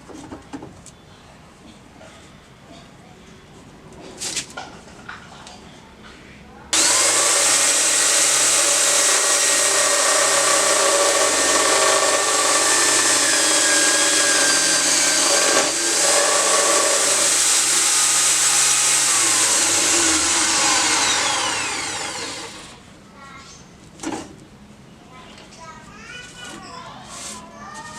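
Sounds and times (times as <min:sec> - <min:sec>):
electric power tool whining: 0:06.8 - 0:22.8.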